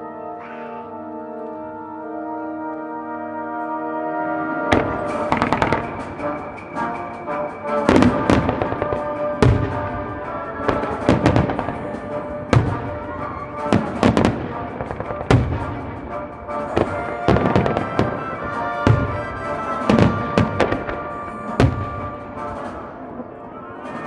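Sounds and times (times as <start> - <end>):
music playing: 0.0 - 24.0
fireworks bursting with loud bangs: 4.7 - 23.0
fireworks crackling: 4.7 - 24.0.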